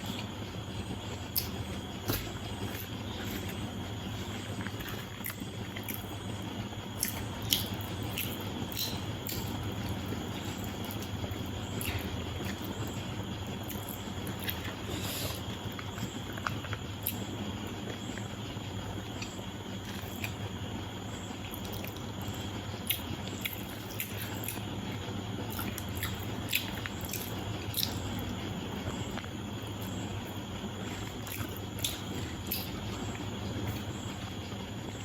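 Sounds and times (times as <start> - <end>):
low background hum: 0.0 - 35.0
chewing: 22.9 - 24.7, 25.5 - 30.0, 30.8 - 33.8.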